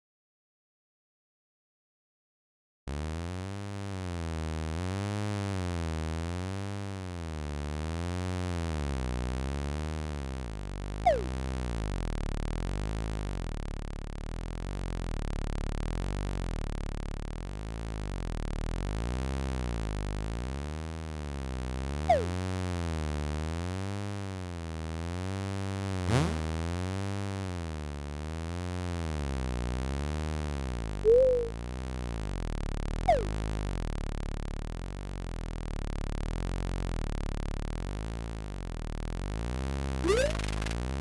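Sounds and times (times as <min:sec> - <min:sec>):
falling zip: 0:26.1 - 0:26.7, 0:40.0 - 0:40.8
wavering synth drone: 0:31.1 - 0:31.6, 0:33.1 - 0:33.5, 0:40.0 - 0:40.8.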